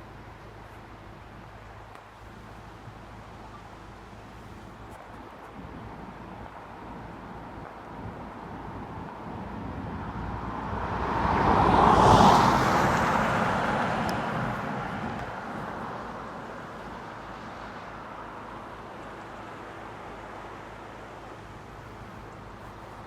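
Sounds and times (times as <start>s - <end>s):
vehicle passing by: 9.6s - 17.8s.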